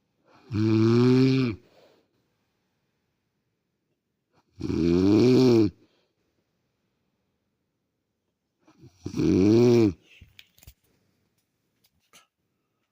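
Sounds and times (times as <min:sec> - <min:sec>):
woman snoring: 0:00.4 - 0:01.6, 0:09.0 - 0:10.0.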